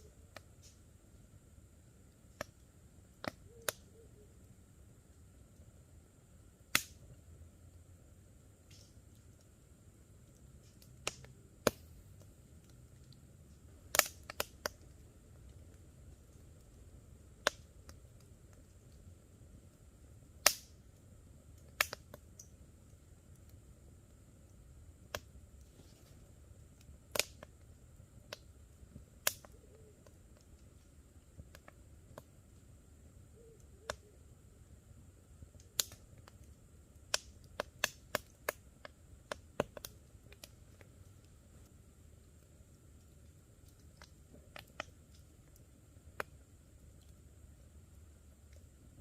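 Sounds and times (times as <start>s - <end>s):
campfire crackling: 0.0s - 49.0s
sharp pops of fire: 2.3s - 3.9s, 6.6s - 7.2s, 8.6s - 9.5s, 10.3s - 12.8s, 13.5s - 18.9s, 20.3s - 23.6s, 25.0s - 25.8s, 26.8s - 32.3s, 35.4s - 41.2s.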